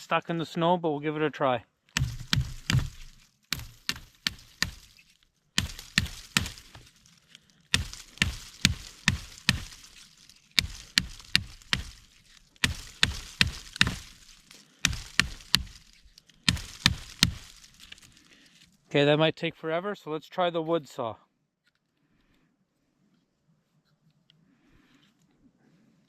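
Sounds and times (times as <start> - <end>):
hatchet chopping into a log: 2.0 - 4.9, 5.6 - 6.9, 7.7 - 10.0, 10.6 - 15.9, 16.5 - 18.0.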